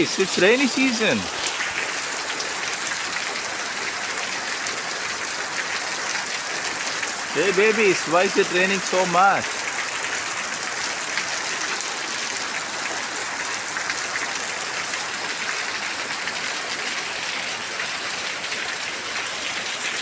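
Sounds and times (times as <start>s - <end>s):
heavy rain falling: 0.0s - 10.3s.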